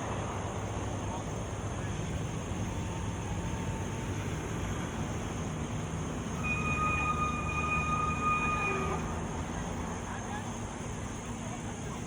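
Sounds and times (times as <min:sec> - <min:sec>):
road traffic rumble: 0:00.0 - 0:12.0
high whine: 0:06.1 - 0:09.7.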